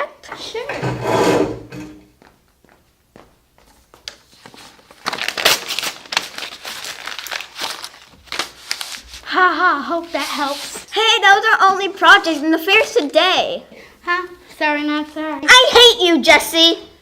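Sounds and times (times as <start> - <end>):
paper crumpling and tearing: 4.4 - 10.9.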